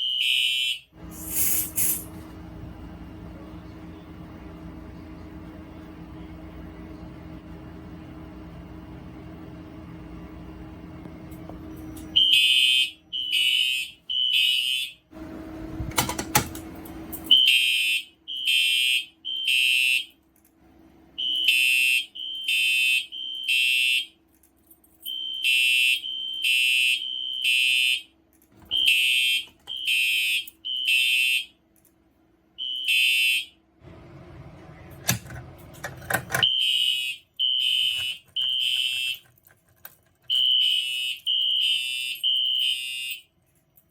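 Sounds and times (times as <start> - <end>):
fire alarm horn beeping: 0.0 - 2.1, 11.9 - 16.3, 17.0 - 20.2, 21.2 - 24.2, 25.0 - 31.6, 32.6 - 33.6, 36.3 - 39.3, 40.3 - 43.3.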